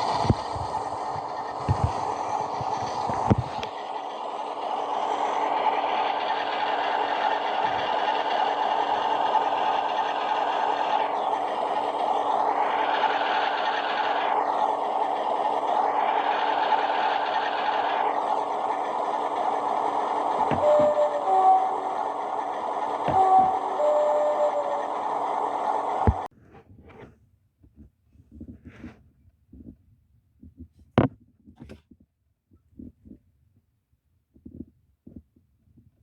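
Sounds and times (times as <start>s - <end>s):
diesel locomotive engine through small speaker: 0.0s - 26.3s.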